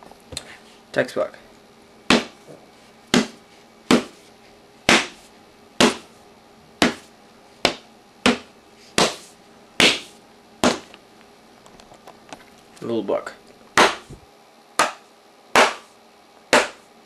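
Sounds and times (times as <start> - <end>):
fist punching a book: 2.1 - 2.4, 3.1 - 4.2, 4.8 - 5.2, 5.8 - 6.1, 6.8 - 10.9, 13.8 - 14.2, 14.8 - 15.0, 15.6 - 16.9.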